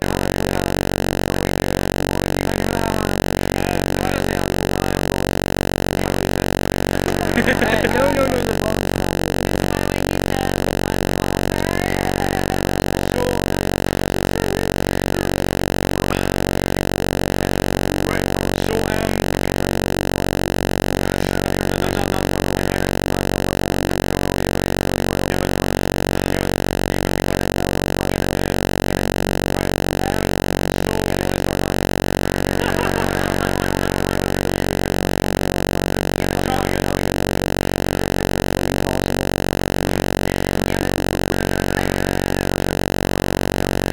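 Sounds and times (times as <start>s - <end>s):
loud electrical buzz: 0.0s - 43.9s
distant voices: 6.9s - 13.4s.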